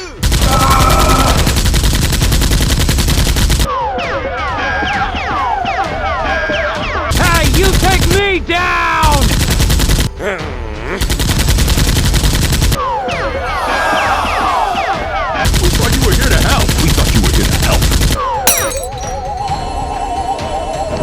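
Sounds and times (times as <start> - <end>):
rapid automatic gunfire: 1.2 - 3.7.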